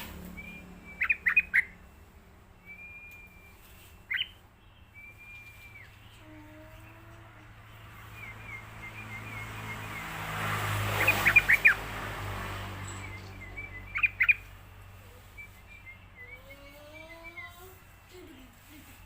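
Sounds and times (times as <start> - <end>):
steady low hum: 0.0 - 10.3
faint bird chirping: 0.0 - 11.8, 12.7 - 19.0.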